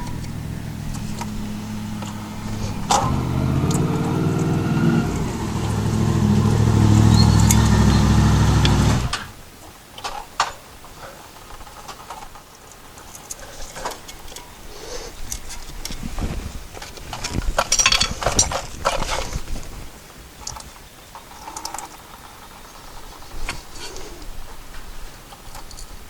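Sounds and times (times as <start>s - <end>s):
motor running steadily: 0.0s - 9.2s.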